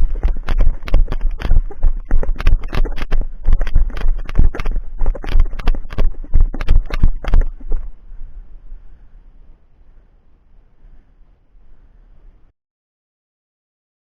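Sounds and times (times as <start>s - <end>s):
fast footsteps on forest ground: 0.0s - 7.9s
microphone handling noise: 0.0s - 9.0s.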